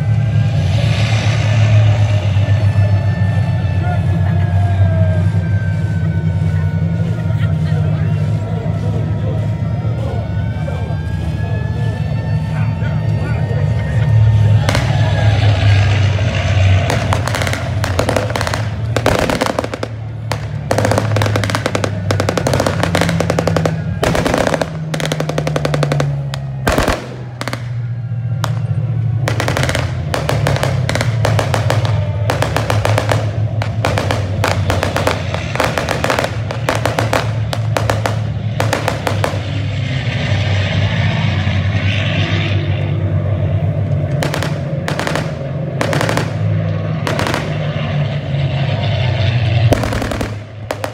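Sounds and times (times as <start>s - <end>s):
music playing: 0.0s - 40.0s
automatic gunfire: 16.9s - 27.8s, 29.3s - 39.5s, 44.2s - 47.8s, 49.8s - 50.9s.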